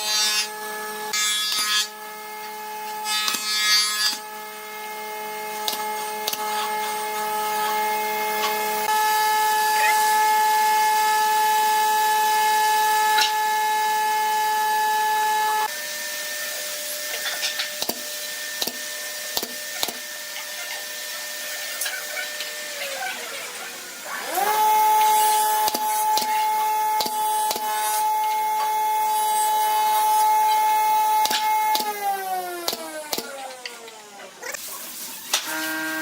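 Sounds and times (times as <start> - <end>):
power tool motor whining: 4.8 - 36.0.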